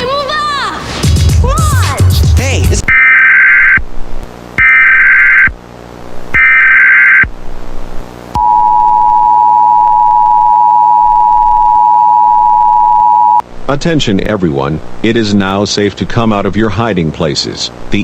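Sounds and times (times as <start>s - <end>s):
screechy data header tones: 2.9s - 3.8s, 4.6s - 5.6s, 6.3s - 7.3s
two-tone attention signal: 8.4s - 13.4s.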